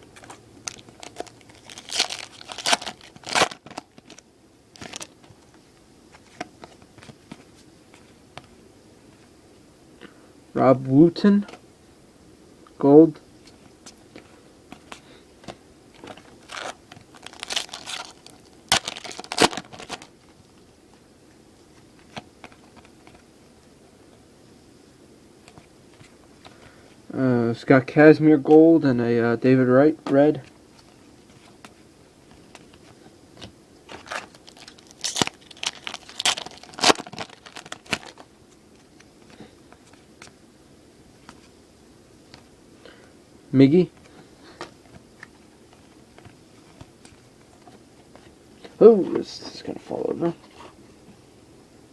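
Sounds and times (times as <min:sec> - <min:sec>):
foil wrapper crinkling and tearing: 0:00.2 - 0:05.2, 0:16.0 - 0:20.2, 0:33.9 - 0:40.0.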